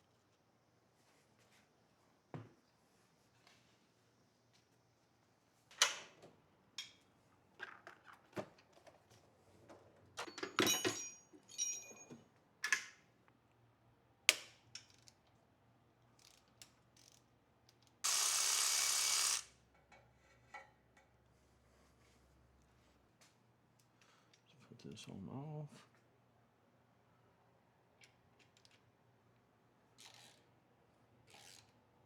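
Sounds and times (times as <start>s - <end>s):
metal tools clinking on engine parts: 10.2s - 12.2s.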